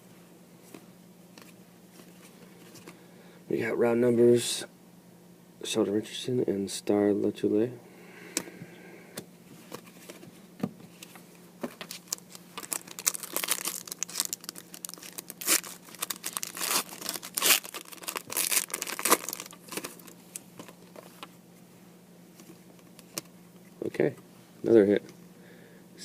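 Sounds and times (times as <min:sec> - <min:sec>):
wrapper tearing and crinkling: 0:11.8 - 0:21.2.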